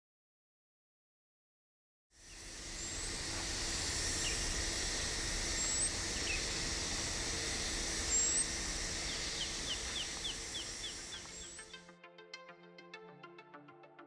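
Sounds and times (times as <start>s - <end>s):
birdsong: 2.2s - 11.9s
steady low rumble: 2.4s - 11.6s.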